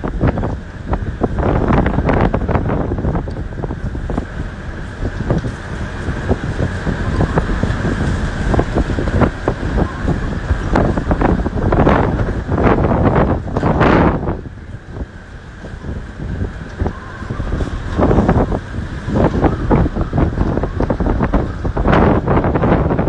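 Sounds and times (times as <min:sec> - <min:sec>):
strong wind buffeting microphone: 0:00.0 - 0:23.0.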